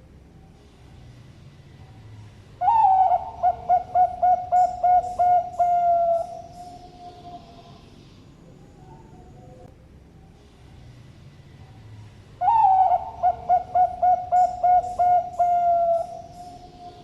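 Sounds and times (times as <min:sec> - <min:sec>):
dove cooing: 0:02.6 - 0:07.8, 0:12.4 - 0:17.0.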